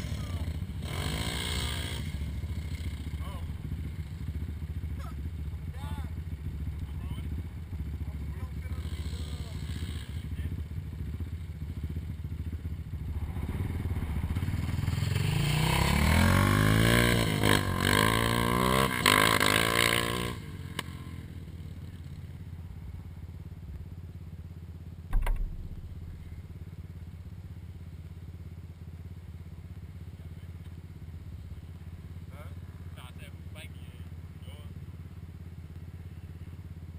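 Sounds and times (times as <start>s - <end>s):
low steady engine hum: 0.0s - 17.9s, 20.3s - 36.9s
atv engine accelerating: 0.0s - 36.9s
short thump: 25.1s - 26.2s.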